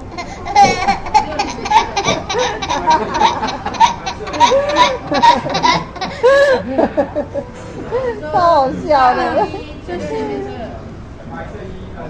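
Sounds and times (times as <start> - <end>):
child laughing: 0.0 - 6.7
people laughing: 0.0 - 7.5.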